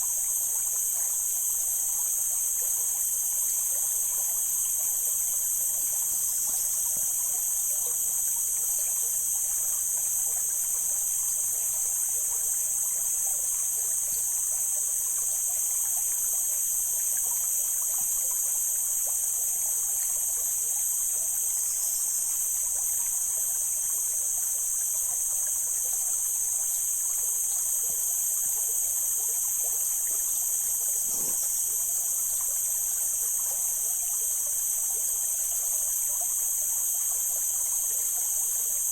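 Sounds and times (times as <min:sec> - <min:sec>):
high-pitched hiss: 0:25.3 - 0:32.7.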